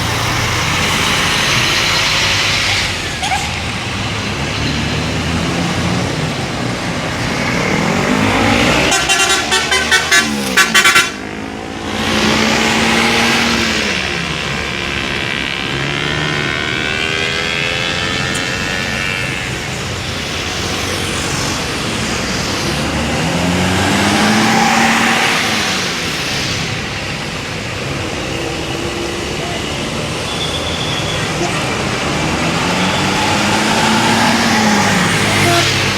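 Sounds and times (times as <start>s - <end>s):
coach engines passing: 0.0s - 35.9s
multi-tone bus horn blasts: 8.6s - 11.4s, 34.9s - 35.9s.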